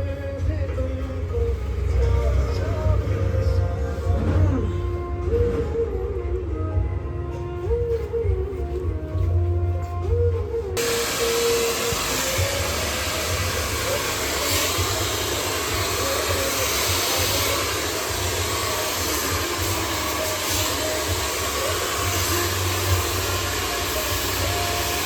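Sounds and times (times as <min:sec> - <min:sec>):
hair dryer blowing: 0:10.8 - 0:25.0.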